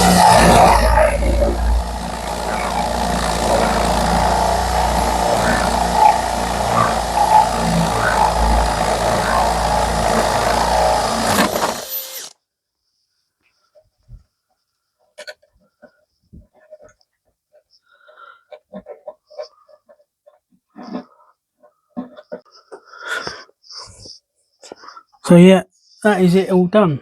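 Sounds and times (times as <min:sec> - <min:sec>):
power drill boring into wood: 0:00.0 - 0:12.4.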